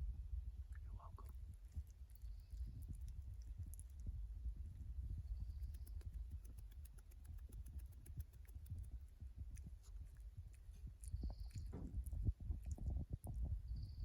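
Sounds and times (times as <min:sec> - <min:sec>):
low rumble: 0:00.0 - 0:14.0
animal chewing: 0:01.2 - 0:04.2, 0:05.4 - 0:13.4.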